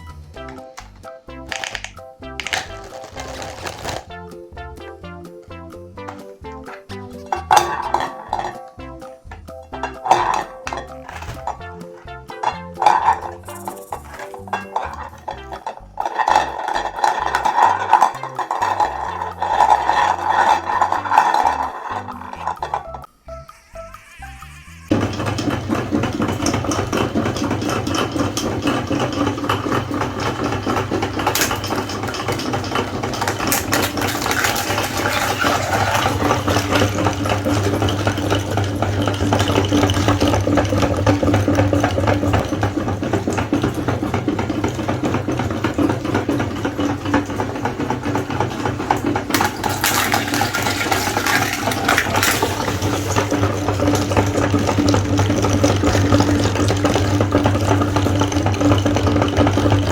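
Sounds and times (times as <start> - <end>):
electric meat grinder humming: 2.5 - 4.1, 23.5 - 59.9.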